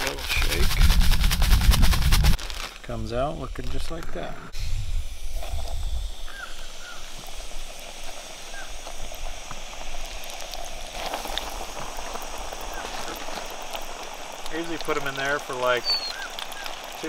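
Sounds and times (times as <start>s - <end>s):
fish deep-frying in oil: 5.5s - 17.0s
faint chirps: 14.6s - 17.0s.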